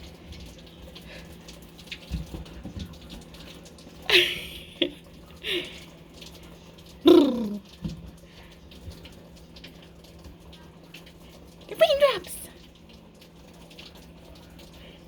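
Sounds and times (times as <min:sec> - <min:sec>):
running water hissing: 0:04.1 - 0:06.0, 0:07.1 - 0:07.7.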